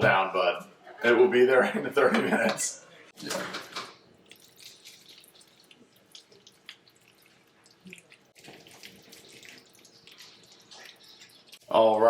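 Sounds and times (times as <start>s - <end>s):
wet squelching of macaroni mixing: 4.2s - 12.0s.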